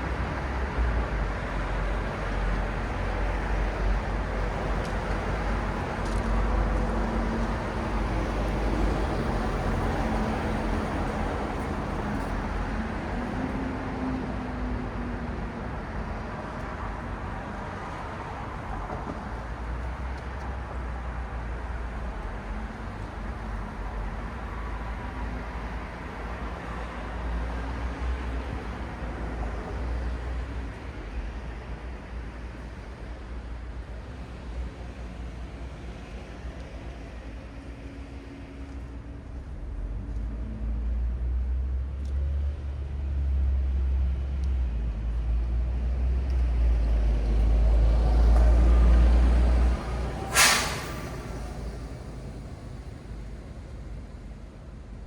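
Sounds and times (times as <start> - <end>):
engine hum: 0.0 - 55.0
passing road traffic: 0.0 - 55.0
tyres hissing: 50.0 - 52.9.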